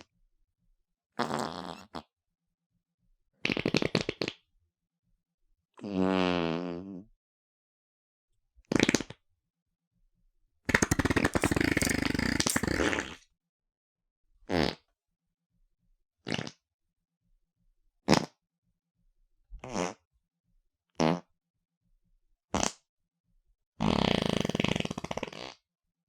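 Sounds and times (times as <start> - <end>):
fart sound effects: 10.7 - 13.2, 23.8 - 25.6.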